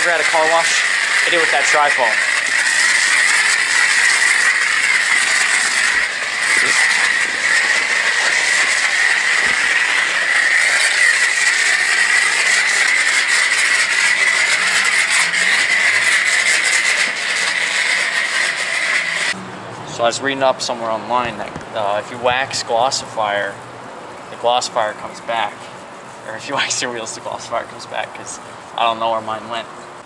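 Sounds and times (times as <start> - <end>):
spray wand hissing: 0.0 - 19.4.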